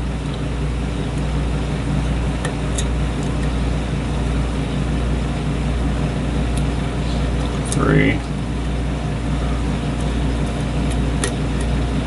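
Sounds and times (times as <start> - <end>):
background machinery hum: 0.0 - 12.0.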